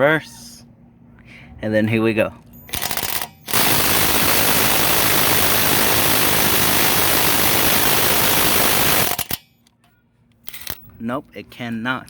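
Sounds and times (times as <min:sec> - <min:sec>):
impact driver hammering: 0:02.7 - 0:09.4.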